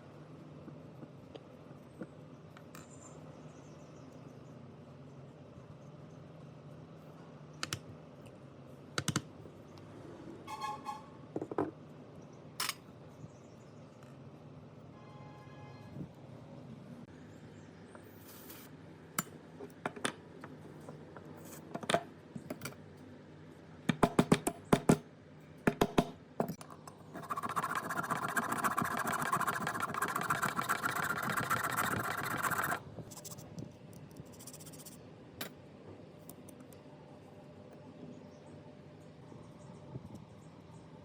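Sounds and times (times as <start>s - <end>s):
steady scraping noise: 27.0s - 33.5s.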